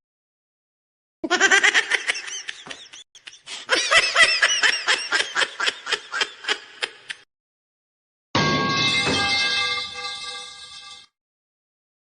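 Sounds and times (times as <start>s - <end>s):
high-pitched laugh: 1.2s - 7.2s.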